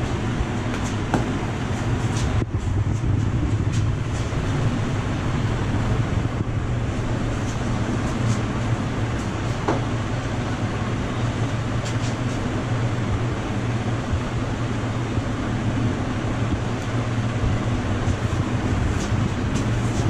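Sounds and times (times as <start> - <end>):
roadside traffic hum: 0.0 - 20.0.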